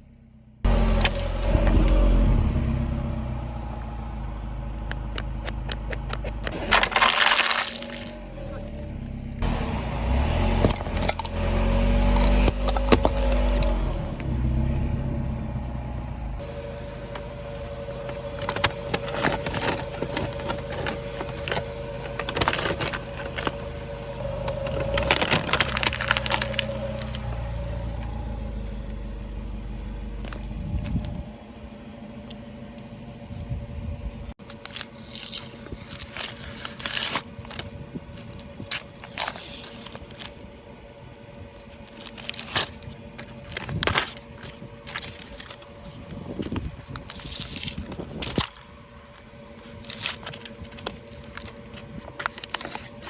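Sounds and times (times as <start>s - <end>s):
car engine running slowly: 0.0s - 53.0s
tyres crushing crunchy objects: 0.9s - 2.2s, 4.9s - 9.2s, 10.1s - 13.9s, 17.0s - 28.2s, 34.4s - 40.5s.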